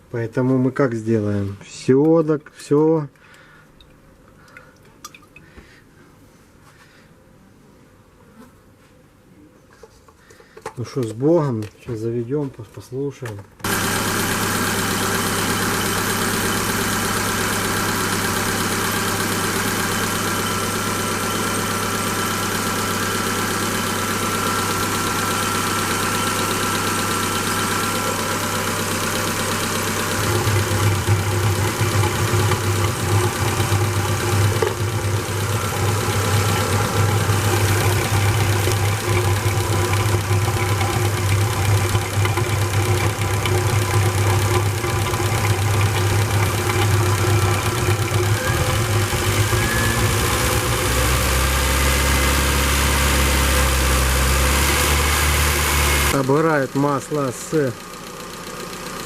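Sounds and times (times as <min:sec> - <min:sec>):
car engine idling: 0:13.6 - 0:59.0.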